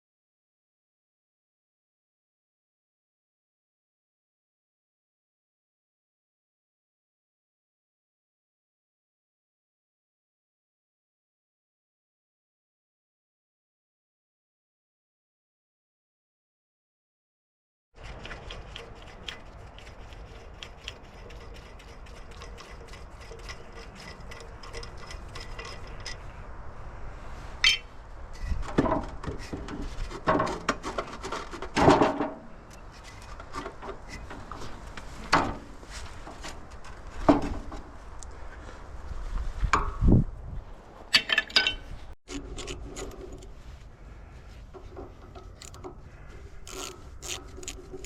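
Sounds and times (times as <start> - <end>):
metal clanks and knocks: 27.6 - 34.6.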